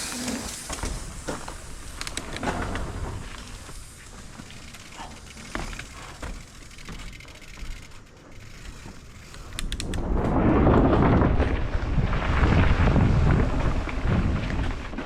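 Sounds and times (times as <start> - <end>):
bike clicks and rattles: 0.0 - 10.4
tyres rumbling on dirt trail: 0.0 - 15.0
wind on microphone: 9.8 - 14.8.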